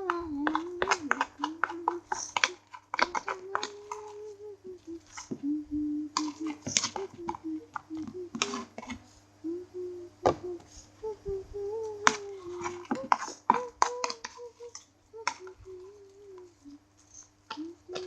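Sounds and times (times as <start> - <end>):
person humming: 0.0 - 16.8, 17.5 - 18.0.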